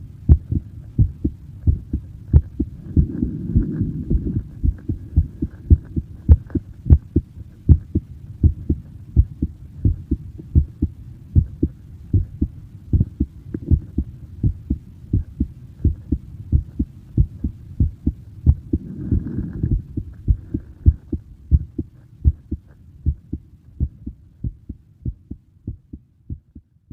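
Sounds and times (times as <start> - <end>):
heartbeat thumps: 0.3 - 26.8.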